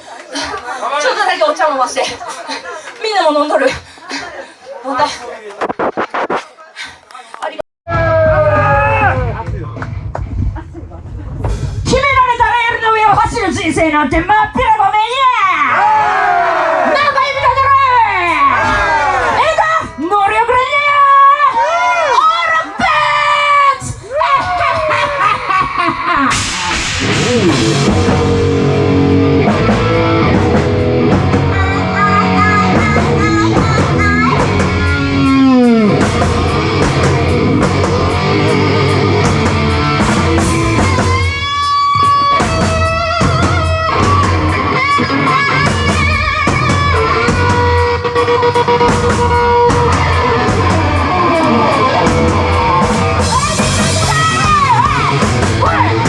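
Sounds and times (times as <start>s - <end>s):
distorted electric guitar: 5.6s - 6.4s, 25.4s - 56.0s
drum kit: 5.6s - 6.5s, 7.9s - 13.6s, 23.8s - 56.0s
bass guitar: 7.9s - 14.0s, 15.8s - 20.0s, 23.8s - 56.0s.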